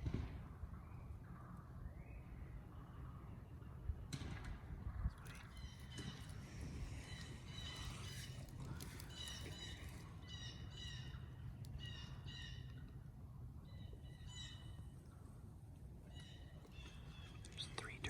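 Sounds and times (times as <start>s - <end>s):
low background rumble: 0.0s - 18.0s
birds calling: 5.1s - 18.0s.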